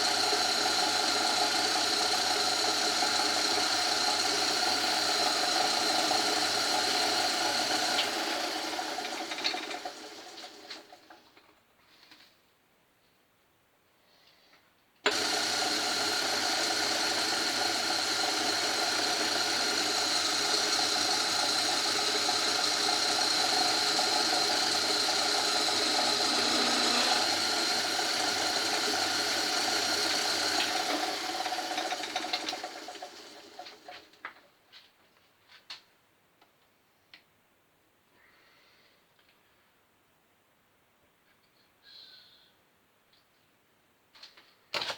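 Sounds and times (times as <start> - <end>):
lathe whining and rattling: 0.0 - 11.2, 15.1 - 34.2.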